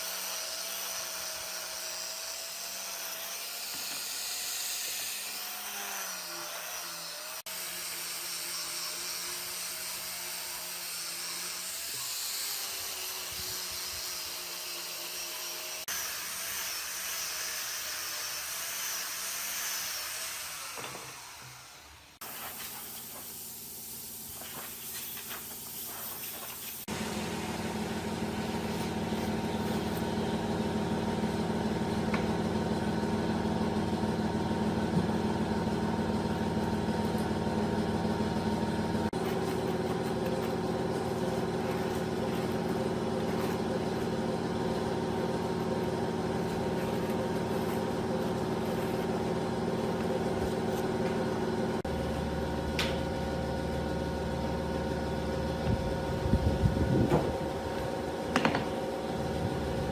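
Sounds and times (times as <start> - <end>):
power tool hissing whine: 0.0 - 33.2
motor hum: 26.9 - 59.9.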